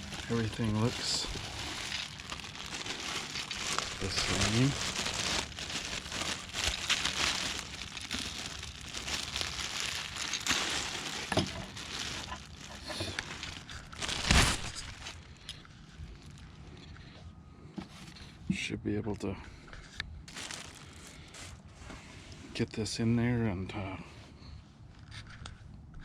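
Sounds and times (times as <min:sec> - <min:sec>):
plastic packaging crinkling: 0:00.0 - 0:16.6, 0:20.3 - 0:21.6.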